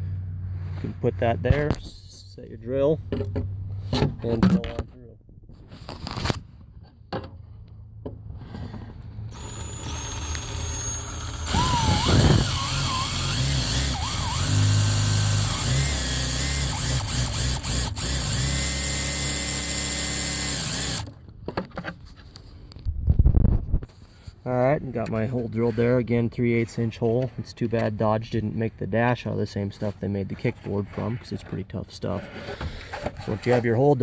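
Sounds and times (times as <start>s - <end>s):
power drill boring through plastic: 9.3s - 21.1s.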